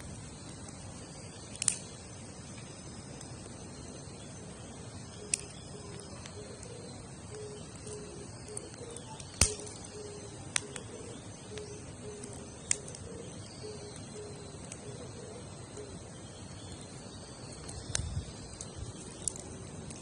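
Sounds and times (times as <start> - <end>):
campfire crackling and popping: 0.0 - 20.0.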